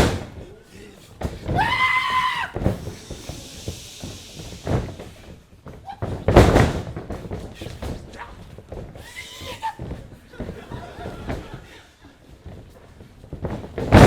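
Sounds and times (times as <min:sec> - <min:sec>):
wrestlers slamming onto canvas: 0:00.0 - 0:00.6, 0:01.2 - 0:11.7, 0:12.4 - 0:14.0
high held cry: 0:01.5 - 0:04.7, 0:09.0 - 0:09.9.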